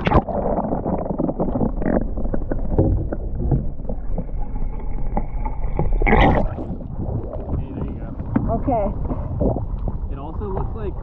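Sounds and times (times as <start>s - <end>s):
water sloshing around kayak: 0.0s - 11.0s.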